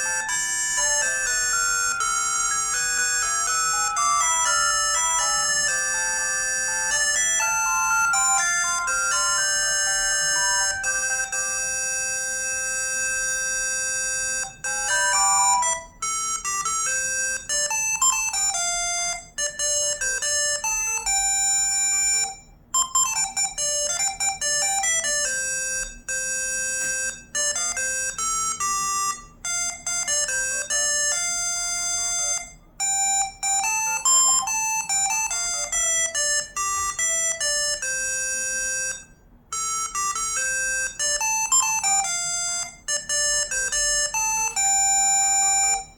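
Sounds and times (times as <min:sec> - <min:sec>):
electronic phone ringtone melody: 0:00.0 - 0:45.9.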